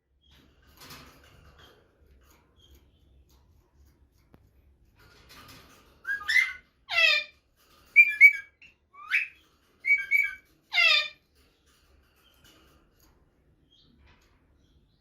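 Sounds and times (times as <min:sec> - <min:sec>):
parakeet shrill calls: 0:06.1 - 0:07.3, 0:08.0 - 0:11.2.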